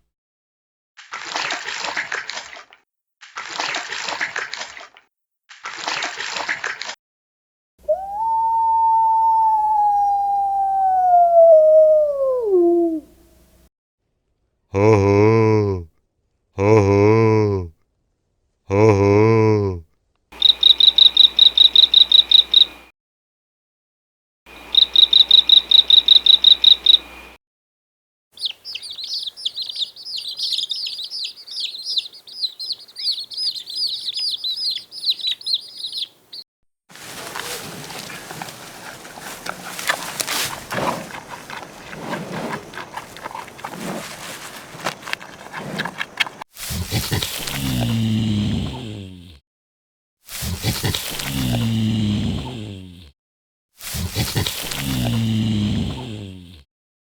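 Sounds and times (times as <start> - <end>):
birds chirping: 20.4 - 22.8, 28.4 - 36.4, 37.0 - 46.4
cricket chirping: 20.4 - 22.9, 24.5 - 27.4, 28.4 - 36.2, 37.0 - 46.4.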